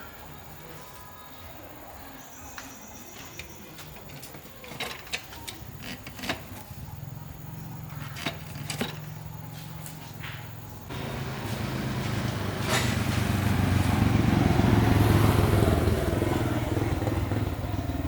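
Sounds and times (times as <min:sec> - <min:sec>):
tractor engine running: 0:10.9 - 0:18.0.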